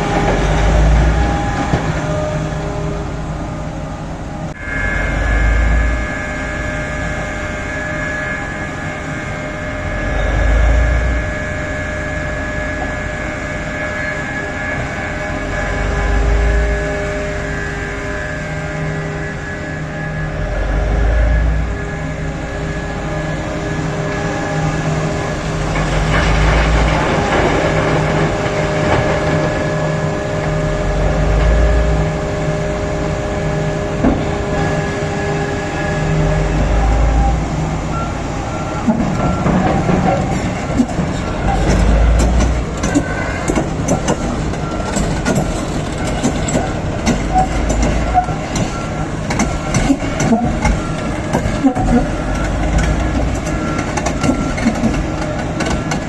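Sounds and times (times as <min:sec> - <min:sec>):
excavator engine humming: 0:00.0 - 0:56.0.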